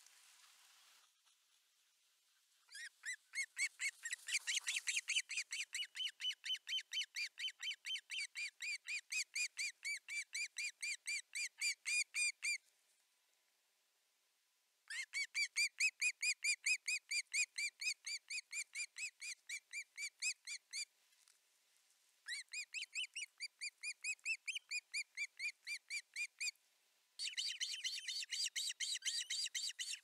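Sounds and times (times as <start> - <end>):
osprey calling: 27.2 - 30.0.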